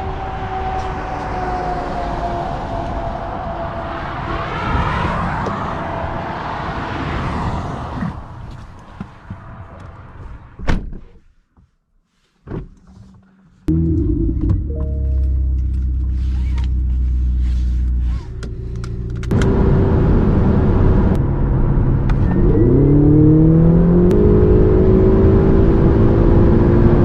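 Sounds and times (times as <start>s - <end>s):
road noise: 0.0s - 10.8s, 12.8s - 27.0s
sharp thunks: 10.6s - 11.2s.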